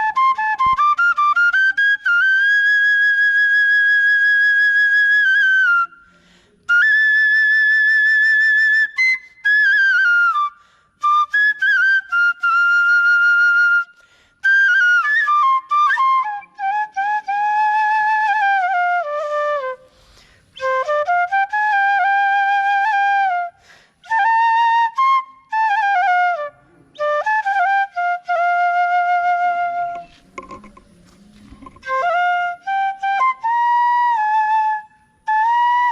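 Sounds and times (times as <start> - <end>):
bamboo flute melody: 0.0 - 35.9
flute player breathing: 5.9 - 6.7, 10.4 - 11.0, 13.9 - 14.5, 19.6 - 20.7, 23.5 - 24.1.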